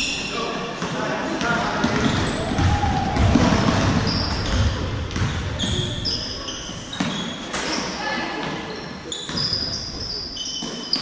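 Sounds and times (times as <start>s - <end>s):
crowd noise: 0.0s - 11.0s
basketball bouncing on court: 1.4s - 6.1s
shoe squeaks: 5.6s - 11.0s.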